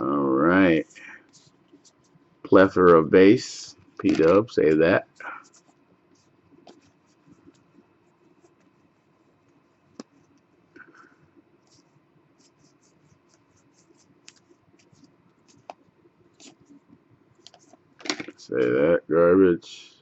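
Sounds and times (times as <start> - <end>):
trading cards flipped by hand: 4.0 - 4.8, 17.4 - 18.8.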